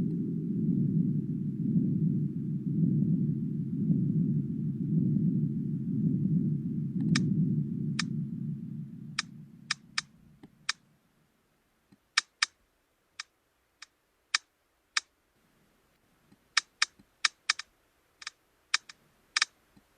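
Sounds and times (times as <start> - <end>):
low rumbling sound: 0.0 - 11.3
sharp clicks: 9.2 - 10.8, 12.2 - 12.6, 13.2 - 15.1, 16.3 - 19.9.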